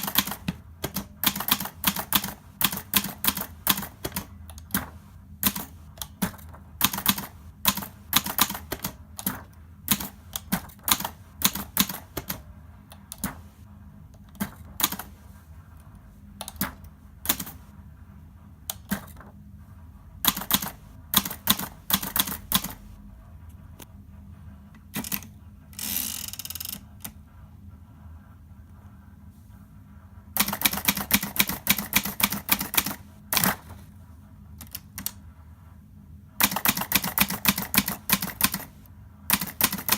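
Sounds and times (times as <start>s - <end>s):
typewriter rasping: 0.0s - 12.4s, 20.3s - 22.9s, 30.4s - 33.7s, 36.4s - 39.9s.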